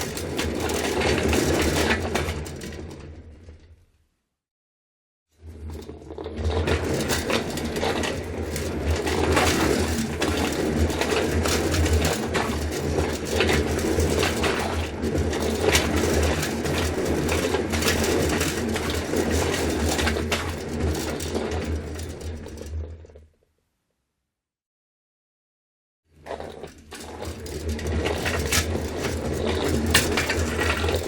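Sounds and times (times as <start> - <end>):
trolley wheels rumbling: 0.0 - 3.2, 6.4 - 22.8, 26.2 - 31.0.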